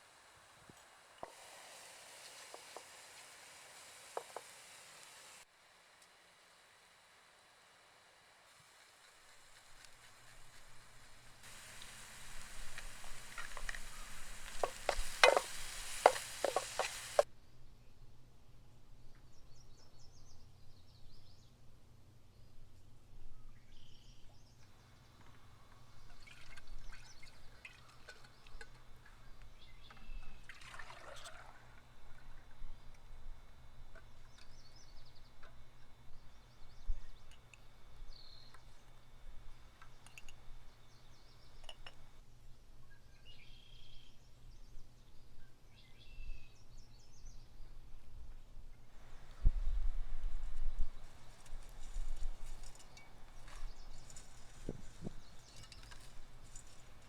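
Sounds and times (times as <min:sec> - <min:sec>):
small handling noises: 0:08.9 - 0:17.3, 0:24.6 - 0:42.2, 0:50.4 - 0:57.0
liquid pouring into pot: 0:26.0 - 0:32.9.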